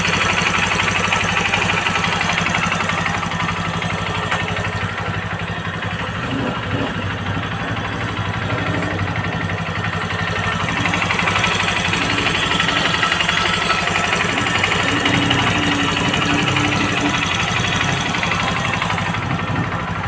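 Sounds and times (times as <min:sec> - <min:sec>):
motorcycle engine idling: 0:00.0 - 0:20.0.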